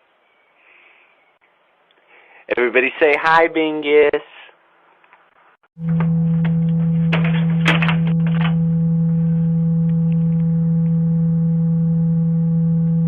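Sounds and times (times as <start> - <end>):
steady low electronic tone: 5.8 - 13.0.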